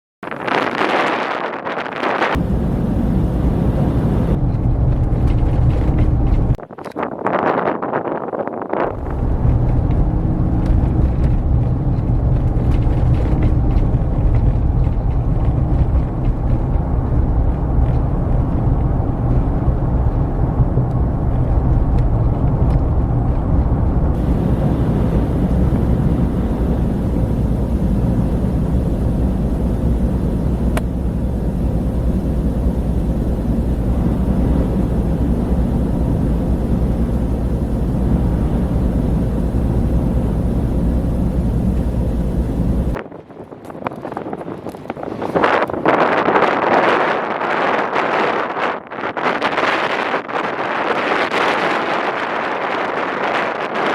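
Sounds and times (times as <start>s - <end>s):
strong howling wind: 0.2s - 53.9s.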